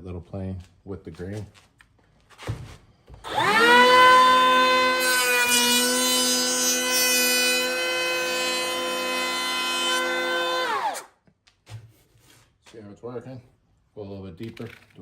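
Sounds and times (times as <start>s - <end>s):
electric planer whining: 3.3s - 11.1s.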